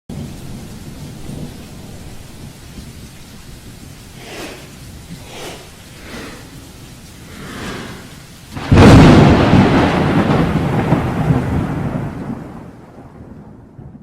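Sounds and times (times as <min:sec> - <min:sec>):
noisy hiss: 0:00.1 - 0:11.3
whooshes: 0:04.1 - 0:08.8.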